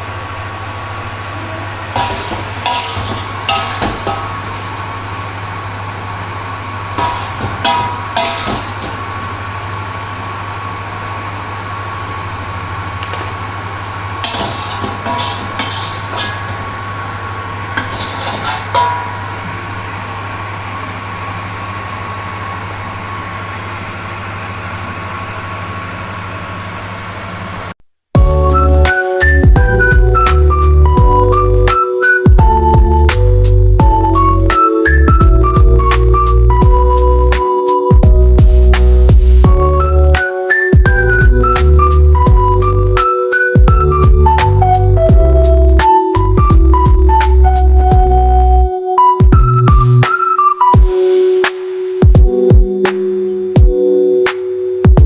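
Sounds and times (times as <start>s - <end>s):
steady low hum: 0.0s - 40.2s, 43.6s - 48.7s
metal utensils clinking on pan: 2.0s - 4.8s, 7.0s - 9.0s, 14.2s - 16.7s, 17.8s - 19.2s.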